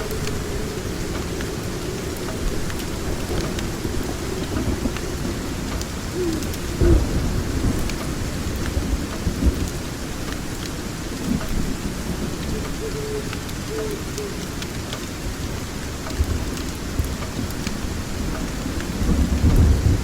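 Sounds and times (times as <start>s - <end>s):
rolling thunder: 0.0s - 10.2s, 18.1s - 20.0s
steady rain: 0.0s - 20.0s.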